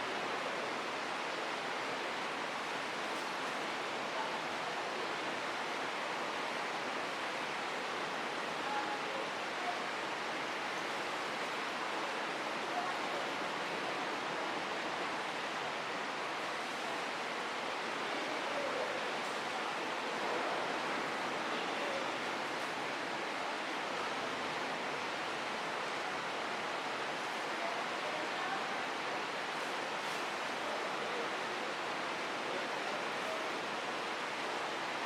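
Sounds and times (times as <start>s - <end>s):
faint distant voices: 8.3s - 35.0s.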